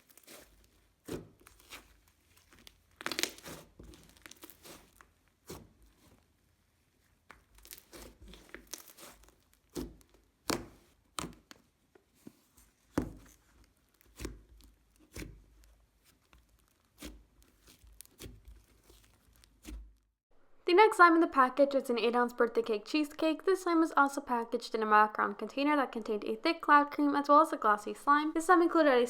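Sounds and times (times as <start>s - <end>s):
slime squished by hand: 0.0s - 6.4s, 7.0s - 20.0s.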